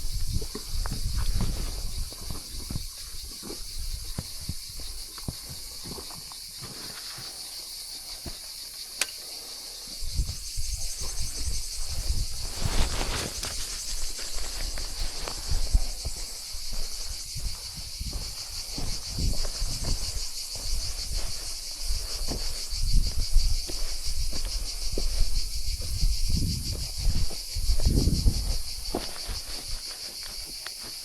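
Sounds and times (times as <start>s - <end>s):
insects chirring: 0.0s - 31.0s.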